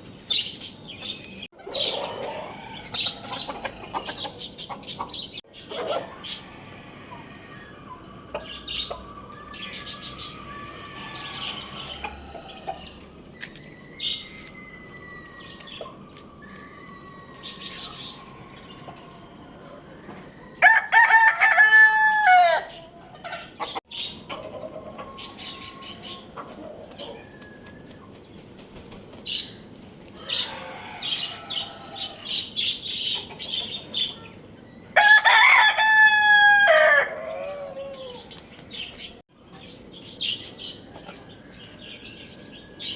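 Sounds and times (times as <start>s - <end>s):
bird calls and chirps: 0.0s - 6.6s, 7.4s - 20.6s
rooster crowing: 6.1s - 13.0s, 16.3s - 22.8s, 30.2s - 32.4s, 35.0s - 38.3s.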